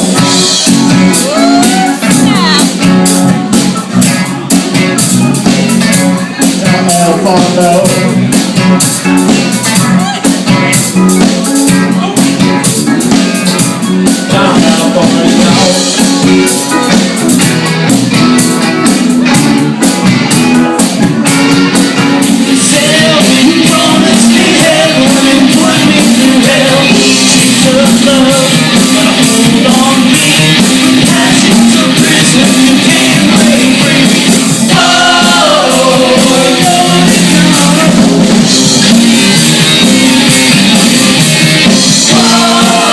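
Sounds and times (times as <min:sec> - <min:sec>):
person singing: 0:00.0 - 0:02.9, 0:05.4 - 0:08.3, 0:13.7 - 0:17.0, 0:21.6 - 0:38.8, 0:41.7 - 0:42.9
drums: 0:00.0 - 0:42.9
electric guitars: 0:00.0 - 0:42.9.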